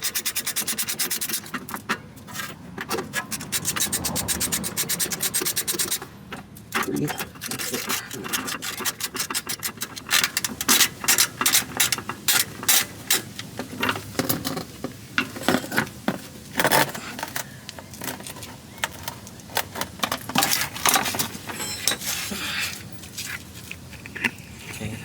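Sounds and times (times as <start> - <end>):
metallic rasp: 0.0 - 6.1.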